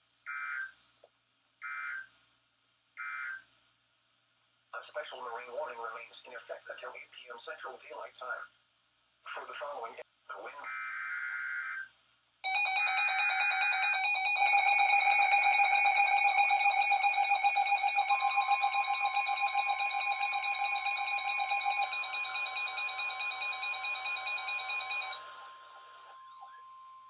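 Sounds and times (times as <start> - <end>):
fast-pulsing electronic beep: 12.5 - 25.2.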